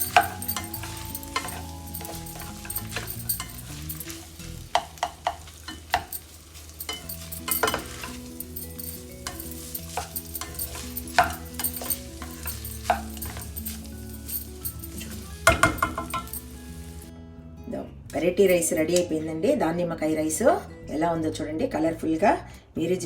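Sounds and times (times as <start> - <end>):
spoon scraping a pan: 0.0 - 17.0
background music: 0.0 - 23.0.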